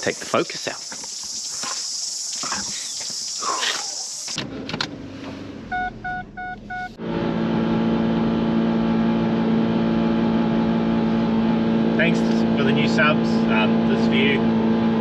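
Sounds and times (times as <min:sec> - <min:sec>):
car engine starting and running: 0:04.2 - 0:15.0
short electronic beeps: 0:05.7 - 0:07.0.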